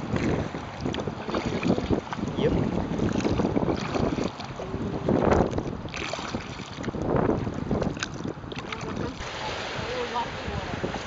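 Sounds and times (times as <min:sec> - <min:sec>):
water sloshing and splashing: 0:00.0 - 0:11.0
wind buffeting microphone: 0:00.0 - 0:11.0.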